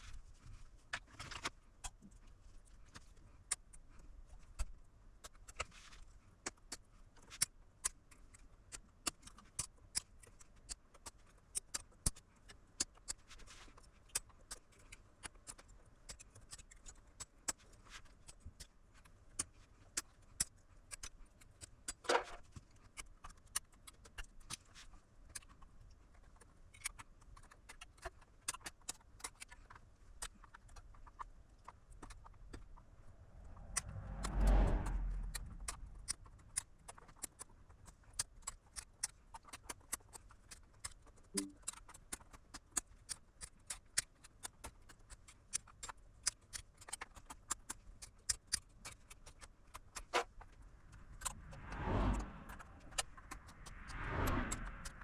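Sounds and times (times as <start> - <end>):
long scrape: 51.2 - 55.0.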